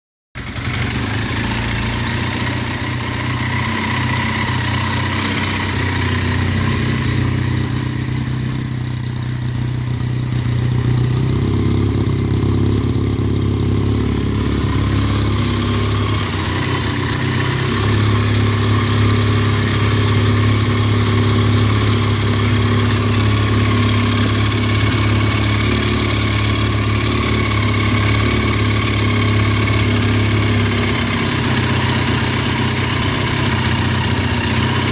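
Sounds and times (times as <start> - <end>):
motorcycle engine idling: 0.4 - 34.9.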